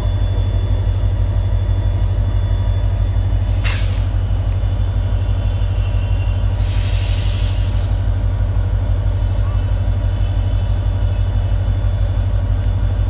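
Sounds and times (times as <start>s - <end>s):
diesel locomotive engine humming: 0.0s - 13.0s
air hiss: 6.6s - 8.0s.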